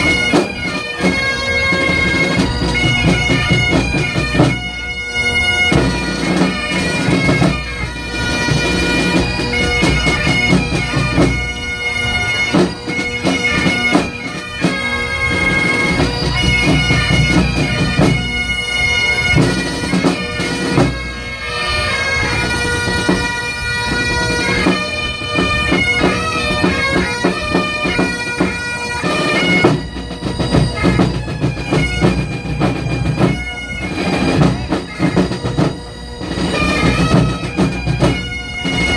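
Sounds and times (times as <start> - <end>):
bagpipes playing melody: 0.0 - 38.9
drum strikes: 24.5 - 38.9.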